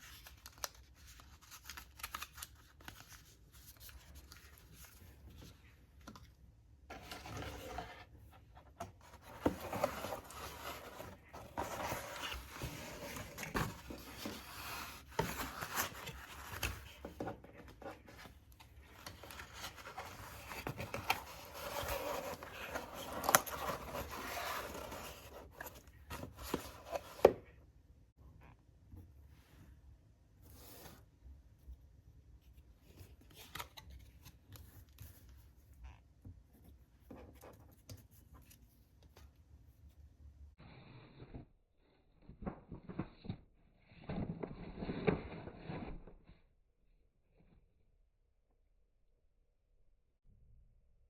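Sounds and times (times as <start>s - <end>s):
paper rustling and scraping: 6.9s - 27.4s.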